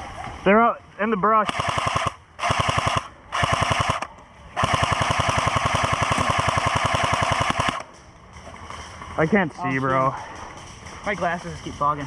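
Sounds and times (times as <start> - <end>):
airsoft rifle automatic fire: 1.4 - 8.0.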